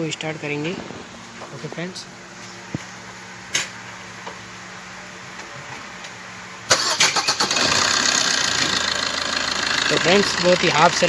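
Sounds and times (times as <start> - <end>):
diesel engine running: 6.7 - 11.0
starter cranking engine: 6.7 - 11.0.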